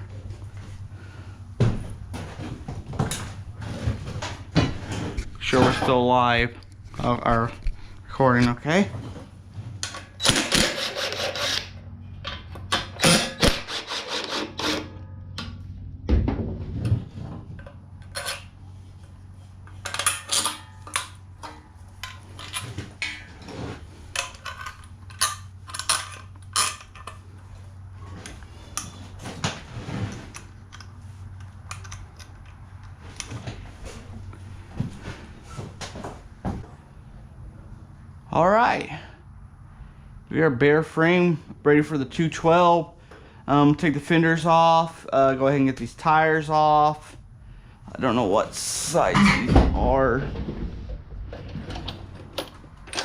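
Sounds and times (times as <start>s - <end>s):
steady low hum: 0.0s - 53.0s
metal tools clinking and clanking: 17.6s - 18.6s, 19.7s - 27.2s.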